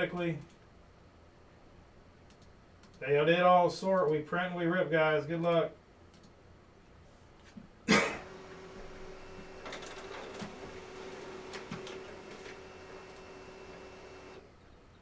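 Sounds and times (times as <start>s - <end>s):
printer running: 8.2s - 14.5s
soft printer clicks: 9.1s - 14.4s.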